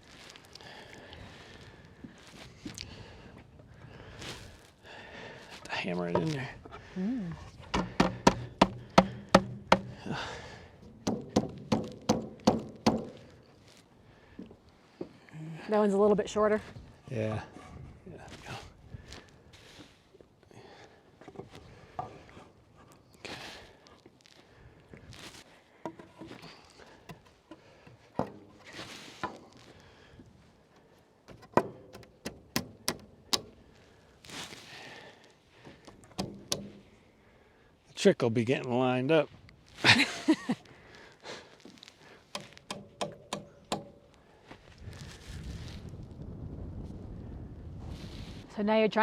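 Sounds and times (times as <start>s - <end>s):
hammer strikes on railing: 7.7s - 10.0s, 11.0s - 13.2s, 42.4s - 44.0s.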